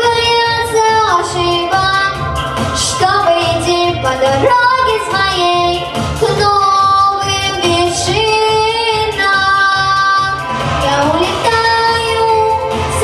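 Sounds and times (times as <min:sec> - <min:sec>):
backing music with steady beat: 0:00.0 - 0:13.0
girl singing with vibrato: 0:00.0 - 0:13.0.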